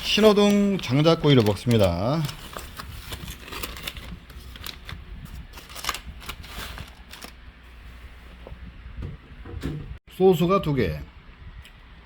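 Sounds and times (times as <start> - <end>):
food packaging rustling and clicking: 0.0 - 7.4.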